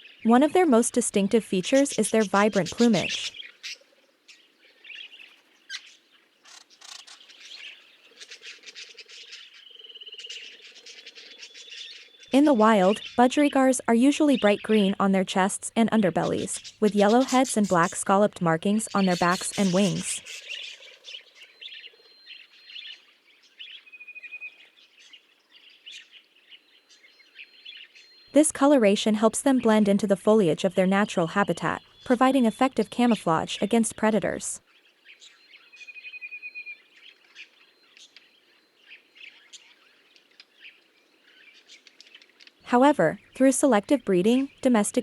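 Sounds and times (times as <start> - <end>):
budgerigar chattering: 0.0 - 3.9, 6.5 - 21.9
small birds chirping: 0.0 - 45.0.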